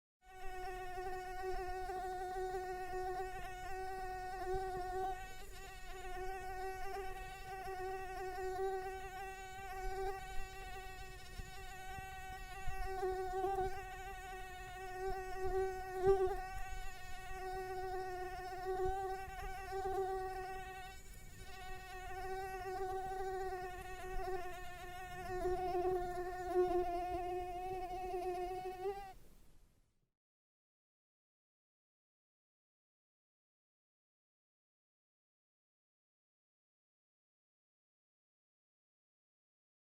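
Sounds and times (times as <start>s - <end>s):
mosquito buzzing: 0.2s - 29.2s.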